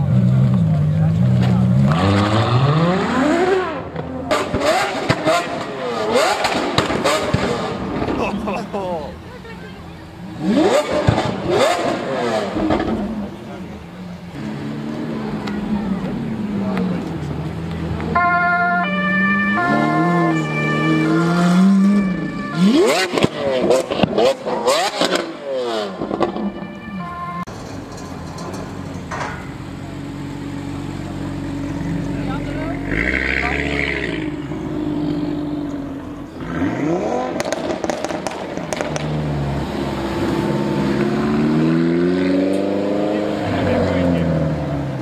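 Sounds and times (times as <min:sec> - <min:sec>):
engine low drone: 0:00.0 - 0:45.0
car engine revving hard: 0:01.7 - 0:08.1, 0:10.3 - 0:13.4, 0:19.5 - 0:26.3, 0:30.9 - 0:45.0
exhaust pops and crackles: 0:03.9 - 0:08.7, 0:10.7 - 0:13.9, 0:22.8 - 0:26.6, 0:37.2 - 0:39.4
two-tone siren: 0:18.1 - 0:23.0, 0:26.3 - 0:27.5.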